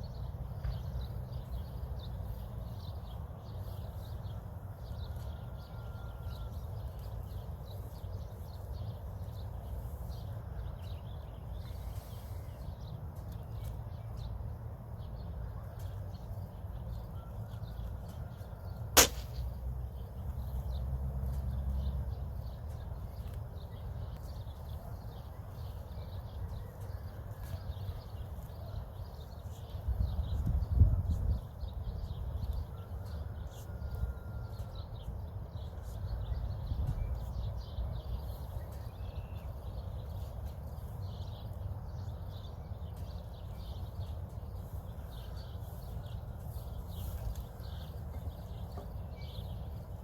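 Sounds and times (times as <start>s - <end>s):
sharp crack: 19.0s - 19.6s.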